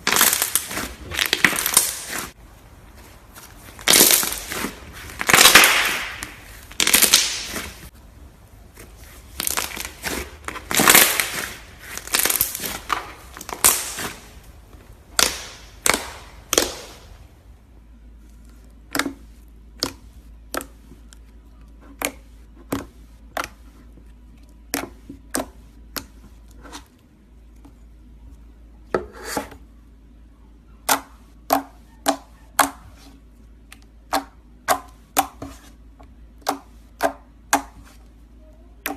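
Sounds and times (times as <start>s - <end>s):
slime crunching and squishing: 0.0s - 28.1s
slime popping: 3.7s - 7.9s, 9.3s - 14.4s.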